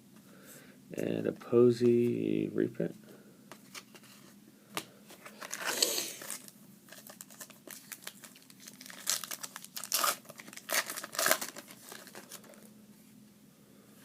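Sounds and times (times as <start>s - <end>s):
foil wrapper crinkling and tearing: 5.4s - 12.6s.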